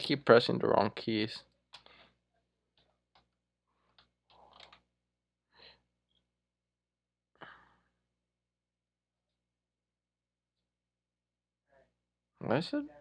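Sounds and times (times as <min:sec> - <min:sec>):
faint breathing: 0:01.8 - 0:02.2, 0:05.5 - 0:05.9, 0:07.4 - 0:08.1.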